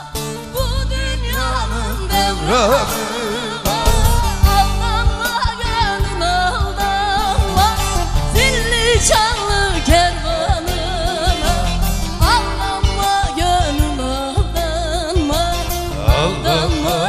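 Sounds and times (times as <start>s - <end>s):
instrumental accompaniment with beat: 0.0s - 17.0s
solo voice singing folk song: 0.7s - 6.5s, 15.8s - 17.0s.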